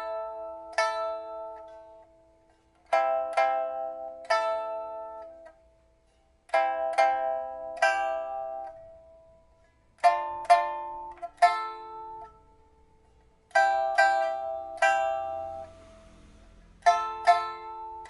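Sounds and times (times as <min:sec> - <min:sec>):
pipa plucked notes: 0:00.0 - 0:18.0.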